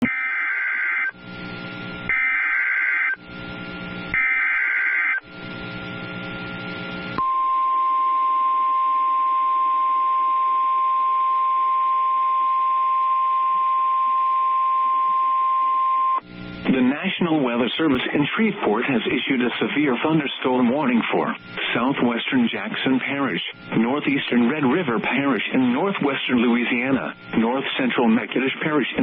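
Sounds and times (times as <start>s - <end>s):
steady alarm tone: 0.0s - 6.4s
low receiver buzz: 0.0s - 18.0s, 19.6s - 27.9s.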